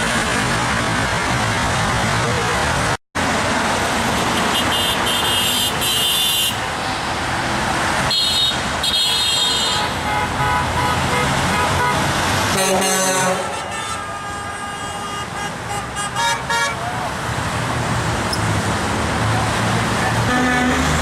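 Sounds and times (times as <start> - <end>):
road traffic: 0.0 - 21.0
car horns honking: 4.3 - 6.7, 8.1 - 16.9, 20.1 - 21.0.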